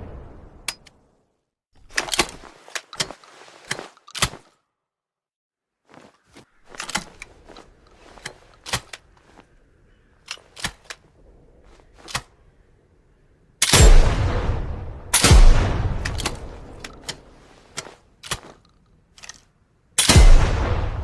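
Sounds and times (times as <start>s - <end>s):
shotgun clicks and knocks: 6.6s - 9.2s, 10.2s - 11.1s, 16.0s - 19.6s
loud shotgun shot: 13.7s - 16.6s, 20.0s - 21.0s.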